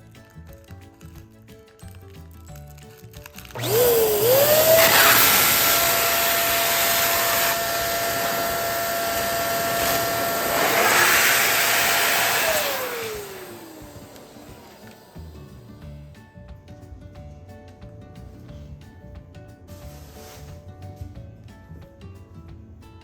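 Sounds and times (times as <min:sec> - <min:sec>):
electric balloon inflator motor: 0:03.4 - 0:16.0.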